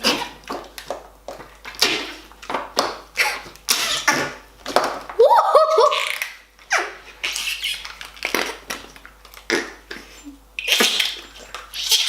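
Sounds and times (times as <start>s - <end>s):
noise putty fart sounds: 1.7s - 2.3s, 3.1s - 4.8s, 9.4s - 12.0s.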